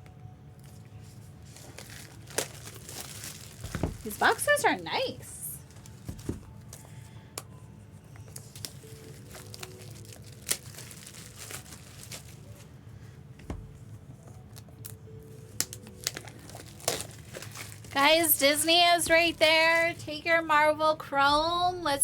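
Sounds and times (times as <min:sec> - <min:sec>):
plastic wrapper crinkling and tearing: 0:00.6 - 0:06.9, 0:08.2 - 0:12.8, 0:14.2 - 0:20.0.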